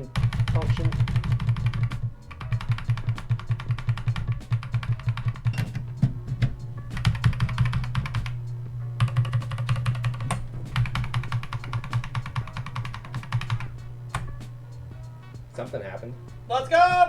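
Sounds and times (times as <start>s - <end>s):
steady low hum: 0.0s - 17.0s
keyboard key pressed rapidly: 0.2s - 8.4s, 9.0s - 14.4s.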